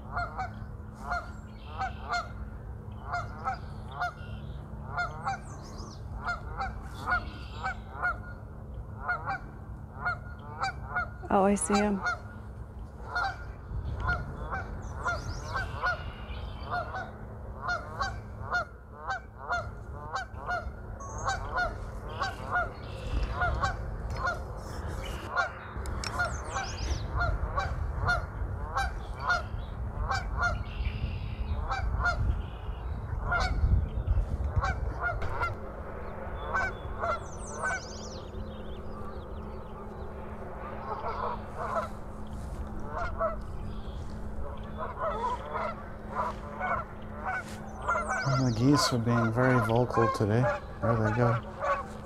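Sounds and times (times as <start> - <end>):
geese honking: 0.0 - 33.8, 34.4 - 52.0
low rumble: 12.0 - 49.7
small birds chirping: 36.4 - 40.1, 47.3 - 52.0.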